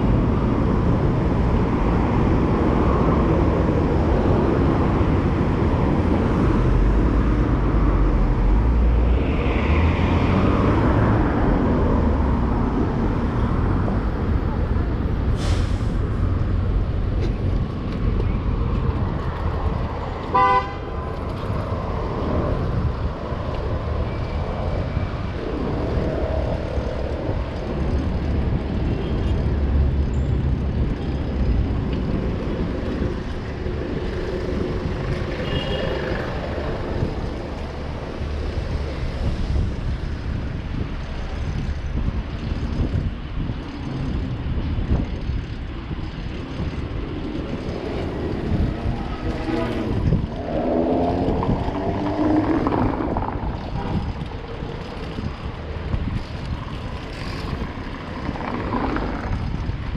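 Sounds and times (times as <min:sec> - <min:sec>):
street traffic rumbling: 0:00.0 - 0:59.9
car horn toot: 0:20.4 - 0:20.8.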